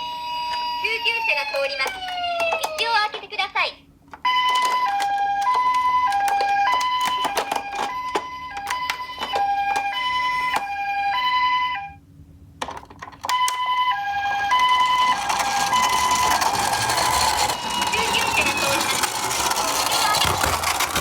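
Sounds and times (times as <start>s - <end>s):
toy siren two-tone hi-lo: 0.0s - 3.0s, 4.2s - 12.0s, 13.3s - 20.8s
rattling rolling noise: 4.1s - 10.7s, 12.6s - 21.0s
sharp clicks and clatters: 14.5s - 21.0s.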